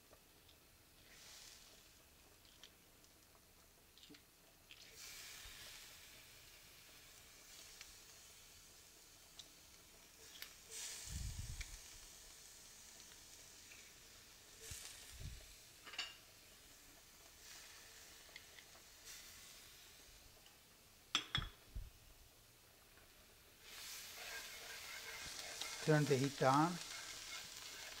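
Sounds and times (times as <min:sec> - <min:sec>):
garlic sizzling in butter: 0:00.4 - 0:20.7, 0:22.8 - 0:28.0.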